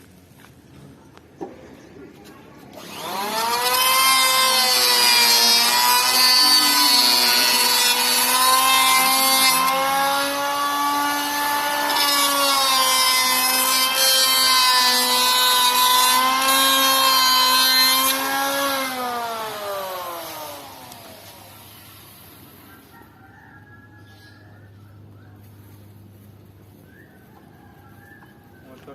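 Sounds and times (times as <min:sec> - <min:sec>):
planer winding down: 0:02.8 - 0:21.7
electric planer whining on wood: 0:02.8 - 0:22.3.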